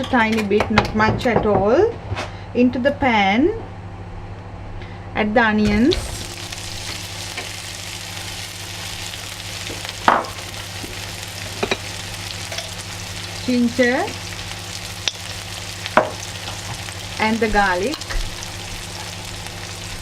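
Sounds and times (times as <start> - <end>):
onions sizzling in a pan: 5.7 - 20.0.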